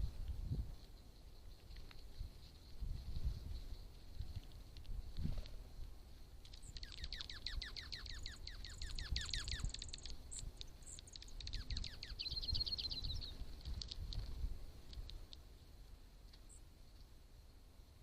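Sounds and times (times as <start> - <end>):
bird calling with sweeping notes: 6.6 - 13.4.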